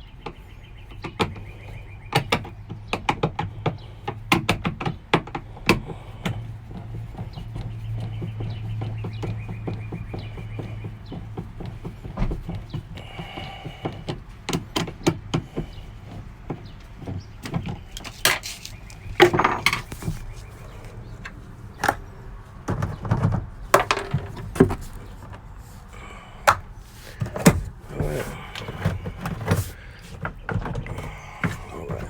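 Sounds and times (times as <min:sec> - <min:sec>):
clicks and scrapes on plastic trim: 0:13.8 - 0:22.1.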